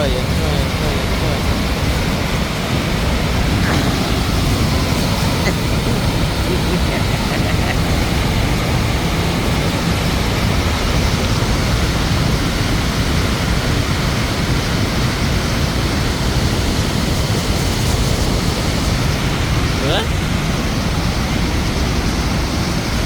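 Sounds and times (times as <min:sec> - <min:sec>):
river water rushing: 0:00.0 - 0:23.0.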